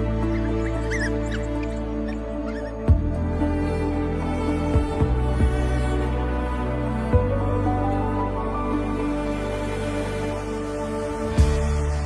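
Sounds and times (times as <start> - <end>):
soft slow instrumental music: 0.0 - 12.0.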